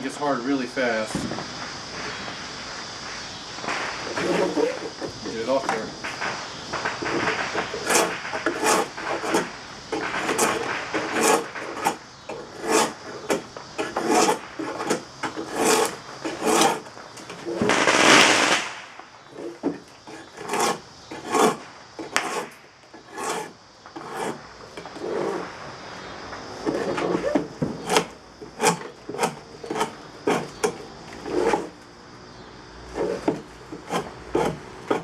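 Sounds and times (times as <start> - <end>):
drawknife scraping wood: 4.1 - 5.1, 7.1 - 17.7, 19.3 - 25.4, 26.6 - 31.8, 32.9 - 35.0.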